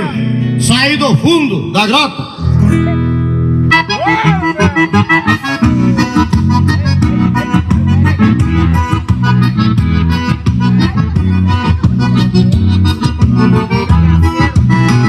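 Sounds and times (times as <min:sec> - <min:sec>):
accordion: 0:02.5 - 0:15.0
folk song over sound system: 0:03.5 - 0:15.0.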